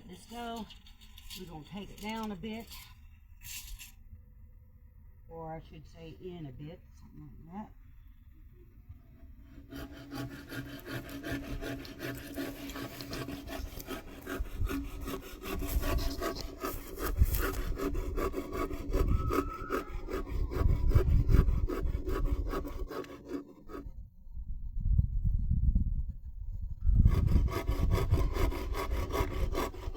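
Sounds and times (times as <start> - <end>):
saw cutting wood: 0.0 - 2.9, 9.5 - 24.0, 26.9 - 29.9.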